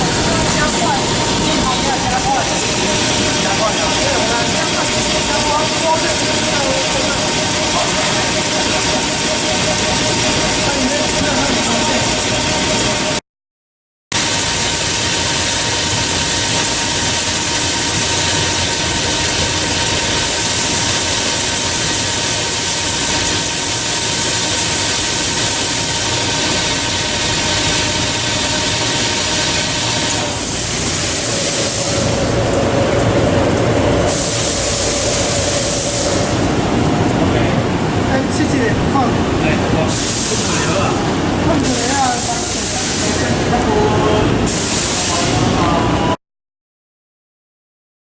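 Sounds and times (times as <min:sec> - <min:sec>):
machine hiss: 0:00.0 - 0:13.2, 0:14.2 - 0:32.5, 0:34.0 - 0:37.0, 0:39.9 - 0:41.0, 0:41.6 - 0:43.6, 0:44.4 - 0:45.5
milling machine cutting: 0:00.0 - 0:13.2, 0:14.2 - 0:43.6
spindle whining: 0:00.0 - 0:13.2.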